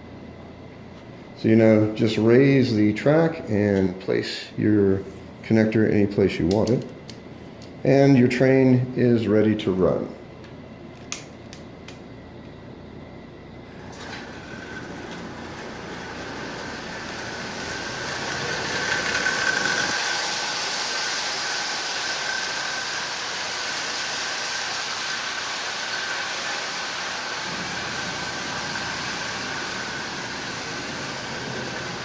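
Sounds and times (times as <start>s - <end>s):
toy train motor whine: 13.7s - 32.0s.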